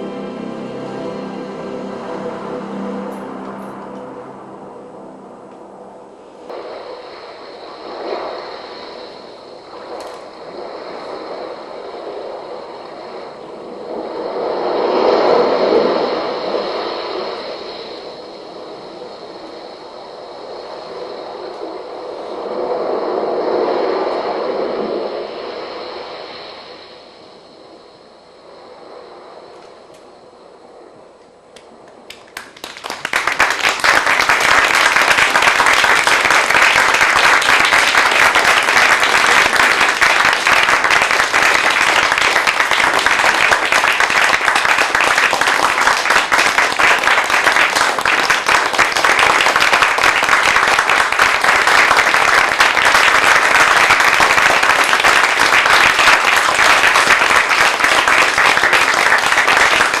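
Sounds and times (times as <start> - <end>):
audience applauding: 32.1 - 60.0.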